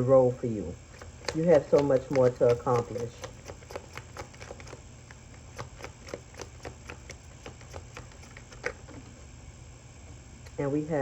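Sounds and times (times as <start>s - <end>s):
cards clicking on table: 1.0s - 4.8s, 5.4s - 9.0s.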